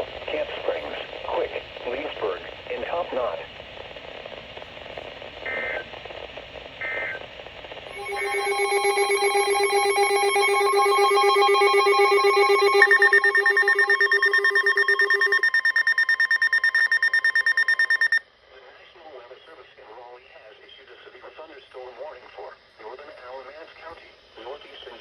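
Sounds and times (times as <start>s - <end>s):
pulsing electronic alert tone: 7.9s - 18.2s
short data chirps: 7.9s - 18.2s.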